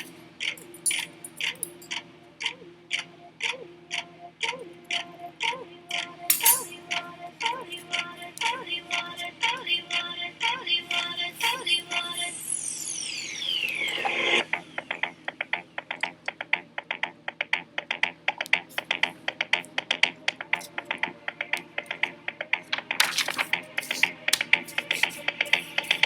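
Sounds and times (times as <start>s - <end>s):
falling whistle-like sweep: 12.4s - 14.4s.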